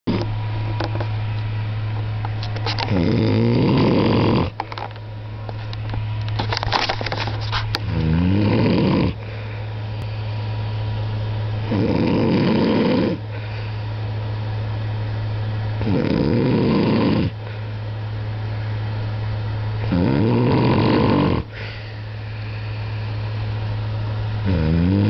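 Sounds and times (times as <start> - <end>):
man snoring heavily: 2.9 - 4.6, 7.8 - 9.3, 11.6 - 13.2, 15.8 - 17.4, 19.8 - 21.8, 24.4 - 25.0
quiet breathing: 21.4 - 23.2.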